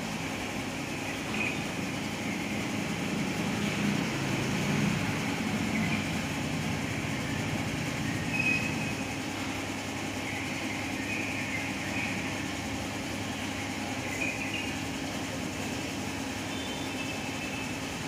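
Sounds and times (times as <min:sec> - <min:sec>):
low rumbling background noise: 0:00.0 - 0:18.0
songbird chirps: 0:00.9 - 0:02.6, 0:10.1 - 0:12.5, 0:13.2 - 0:14.9.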